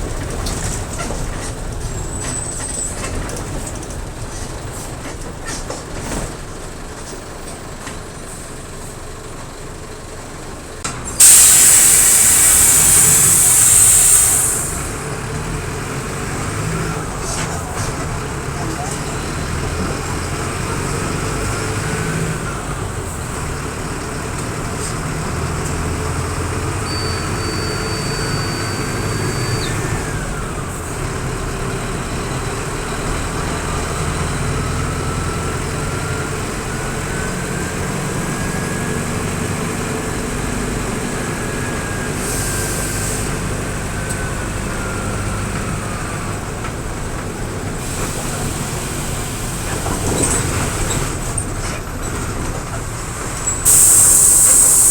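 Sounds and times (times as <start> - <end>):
bus diesel engine running: 0.0 - 54.9
short air hiss: 11.2 - 15.0, 42.2 - 43.4, 53.6 - 54.9
thin engine whistle: 11.2 - 15.0, 26.8 - 30.3, 53.6 - 54.9.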